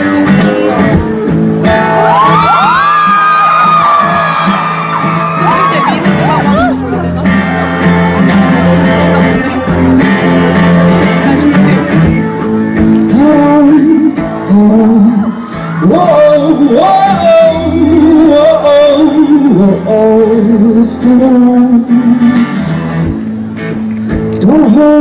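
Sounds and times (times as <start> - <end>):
acoustic guitar: 0.0 - 25.0
person singing wordless melody: 8.1 - 22.4, 24.3 - 25.0.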